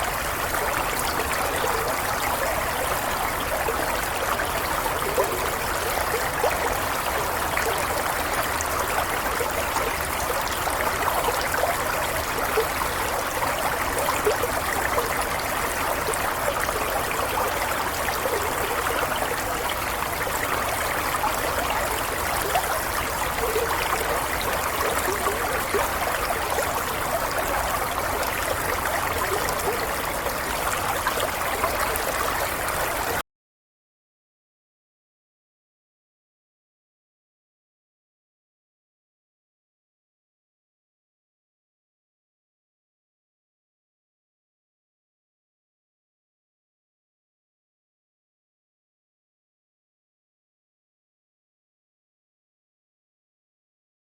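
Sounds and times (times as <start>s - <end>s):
water babbling and gurgling: 0.0s - 33.2s.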